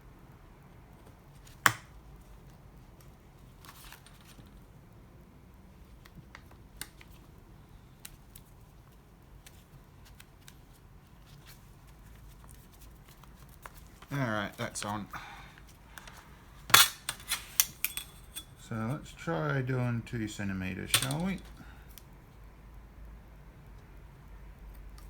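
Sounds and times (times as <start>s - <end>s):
paper rustling: 9.5s - 15.0s.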